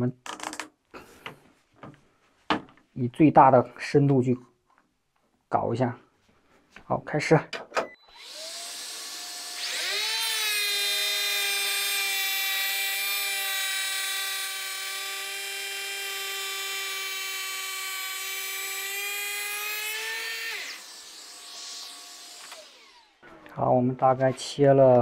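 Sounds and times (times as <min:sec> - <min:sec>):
electric planer whining: 0:08.1 - 0:23.6.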